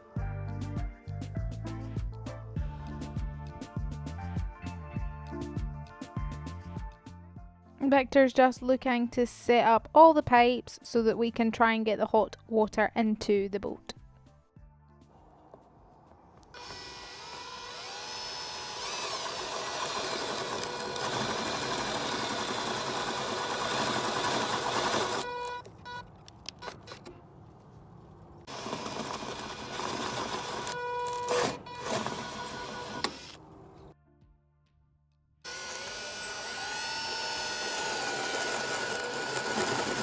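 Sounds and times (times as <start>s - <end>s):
power drill motor whine: 16.6s - 26.0s, 28.5s - 33.4s, 35.5s - 40.0s.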